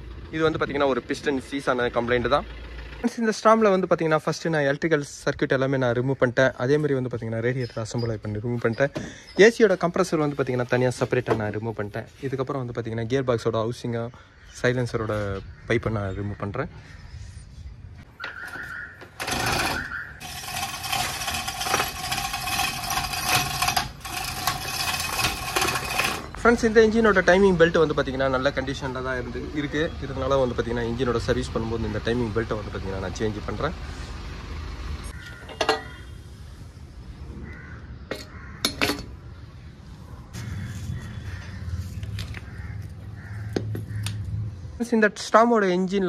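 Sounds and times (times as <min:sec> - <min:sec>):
metal parts clicking: 0:18.4 - 0:26.4
power tool buzzing: 0:19.0 - 0:26.4.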